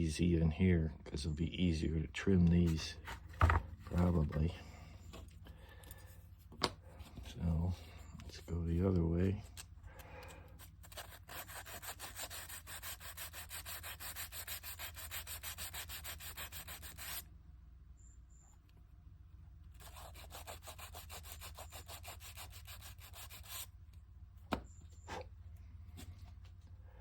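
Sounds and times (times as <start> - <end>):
hand sanding wood: 10.8 - 17.2, 19.8 - 23.7.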